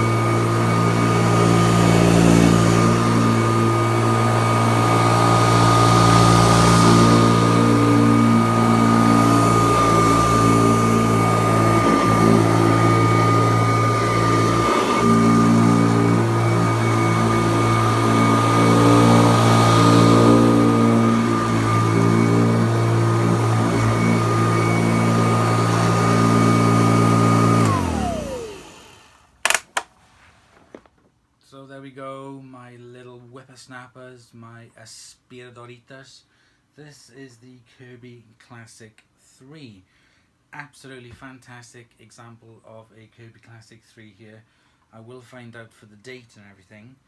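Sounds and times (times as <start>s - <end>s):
vacuum cleaner running: 0.0s - 29.9s.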